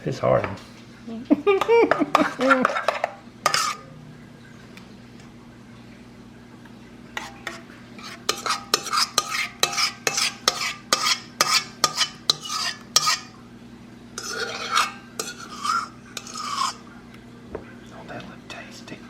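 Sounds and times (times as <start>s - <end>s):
utensil scraping bowl: 1.9s - 3.9s, 7.2s - 13.4s, 14.2s - 16.9s.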